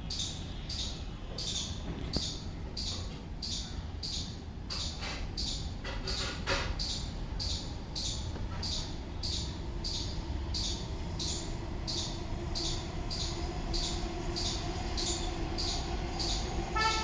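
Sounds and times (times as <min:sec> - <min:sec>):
steady low rumble: 0:06.8 - 0:16.8.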